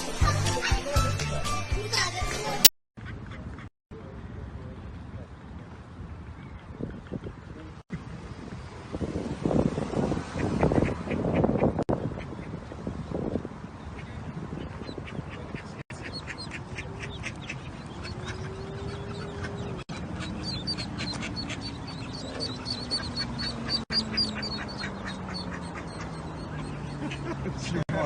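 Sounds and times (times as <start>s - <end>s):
rapid high animal calls: 16.0s - 27.2s.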